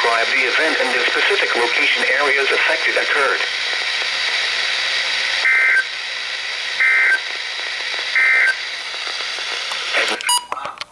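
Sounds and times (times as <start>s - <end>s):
radio static hiss: 0.0s - 10.9s.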